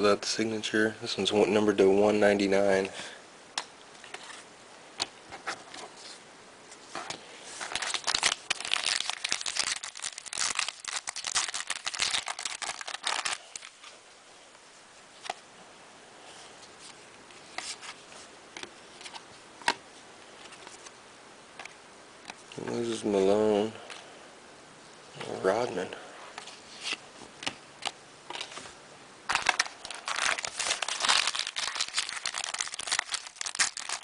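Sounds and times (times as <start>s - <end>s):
paper crinkling and rustling: 7.0s - 14.0s, 28.3s - 34.0s.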